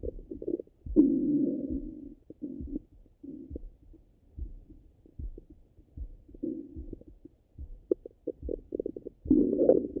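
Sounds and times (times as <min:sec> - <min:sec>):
heartbeat thumps: 0:00.0 - 0:10.0
stomach gurgling: 0:08.0 - 0:10.0.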